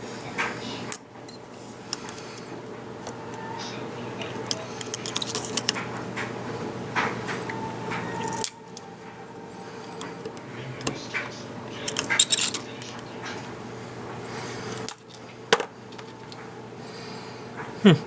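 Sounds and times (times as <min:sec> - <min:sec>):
steady low hum: 0:00.0 - 0:18.0
small metal parts clinking: 0:12.0 - 0:12.7.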